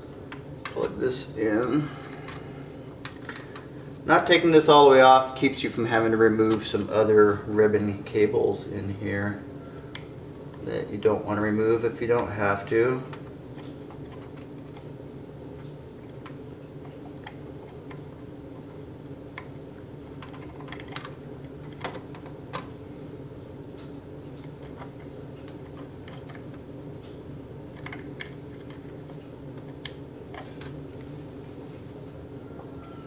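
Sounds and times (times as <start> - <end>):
steady low hum: 0.0 - 33.0
laptop parts clicking: 20.1 - 22.7, 27.7 - 30.8.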